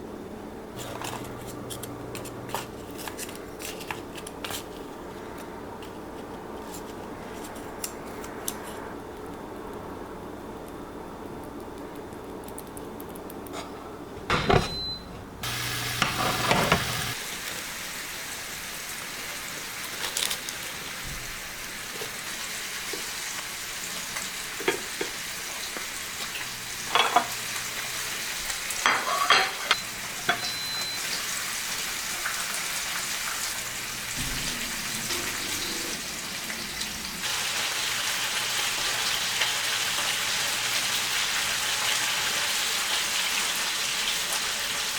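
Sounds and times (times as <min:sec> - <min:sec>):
food sizzling in a pan: 0:15.4 - 0:44.9.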